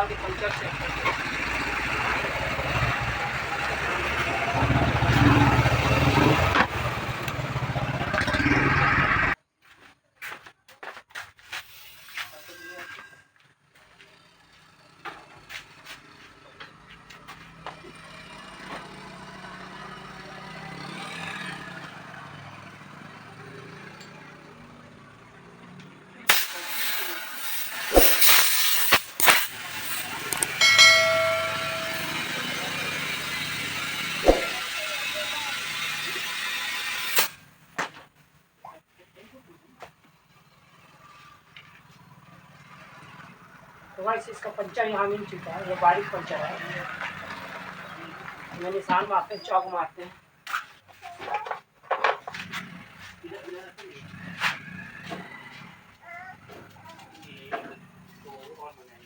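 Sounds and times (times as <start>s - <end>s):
compressed air hissing: 26.3s - 30.4s.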